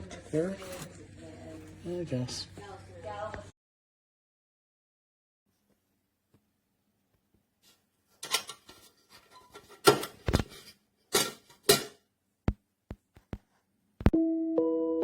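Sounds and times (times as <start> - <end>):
metal kettle clinks and knocks: 11.1 - 12.0.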